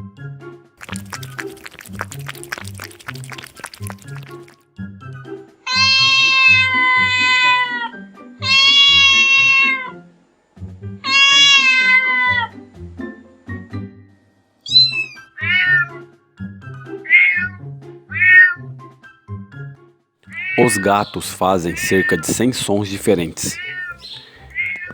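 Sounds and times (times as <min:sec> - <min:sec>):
background music: 0:00.3 - 0:14.6, 0:20.3 - 0:24.9
cats meowing: 0:05.7 - 0:07.8, 0:08.4 - 0:09.8, 0:11.1 - 0:12.5, 0:14.7 - 0:15.8, 0:20.4 - 0:24.9.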